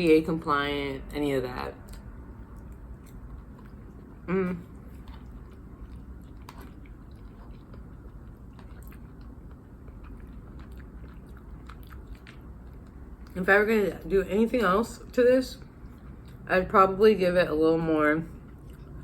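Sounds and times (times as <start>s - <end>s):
chewing and mouth clicks: 1.8s - 13.4s, 15.6s - 16.5s, 18.3s - 19.0s.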